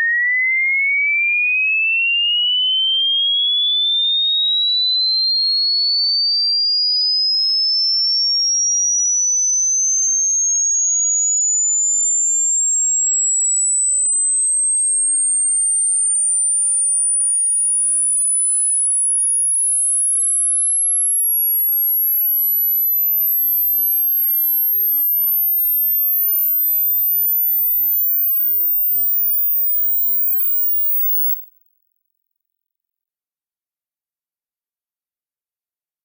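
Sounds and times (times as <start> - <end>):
rising test tone sweep: 22.3 - 31.4.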